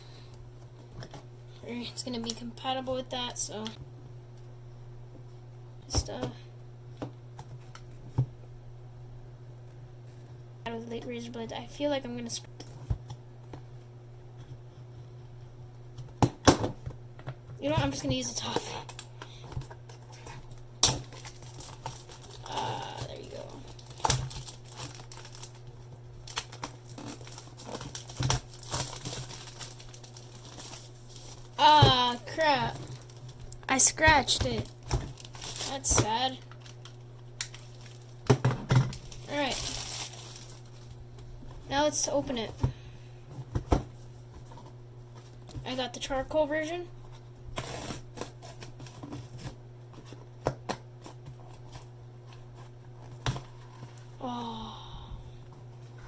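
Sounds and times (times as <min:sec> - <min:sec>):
steady low hum: 0:00.0 - 0:56.0
box packaging crinkling: 0:18.8 - 0:41.0.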